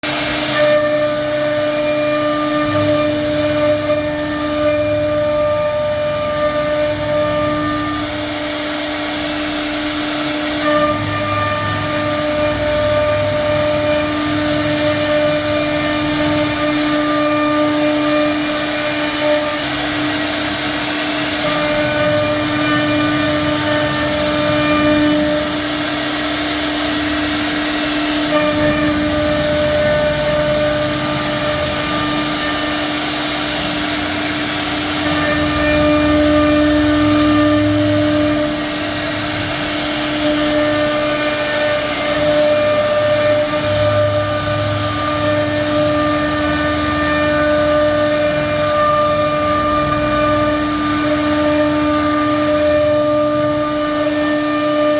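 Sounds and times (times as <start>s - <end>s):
cnc router whining: 0.0s - 54.9s.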